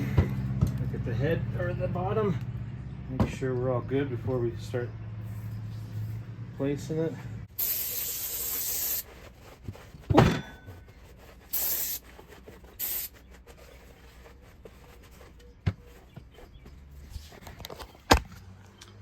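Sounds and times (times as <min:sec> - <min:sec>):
spraying hiss: 0:07.6 - 0:09.1, 0:11.5 - 0:12.0, 0:12.8 - 0:13.1.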